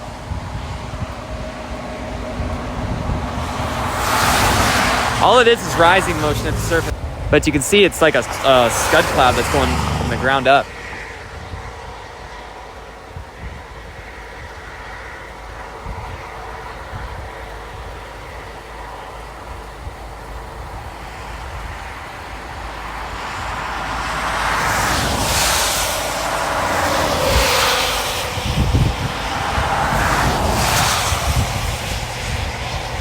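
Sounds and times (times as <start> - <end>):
loud whooshing: 0.0 - 11.3
car road noise rumble: 0.0 - 33.0.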